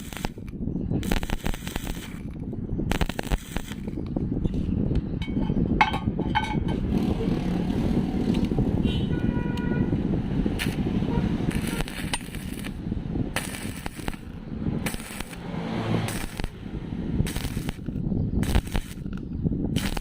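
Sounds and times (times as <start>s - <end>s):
welding arc crackling: 0.0s - 4.0s, 10.5s - 20.0s
steady low rumble: 0.0s - 20.0s.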